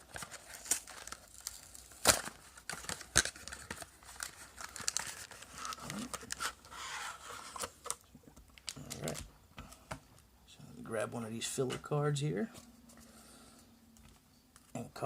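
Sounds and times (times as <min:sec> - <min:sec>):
packaging tearing and crinkling: 0:00.0 - 0:08.0.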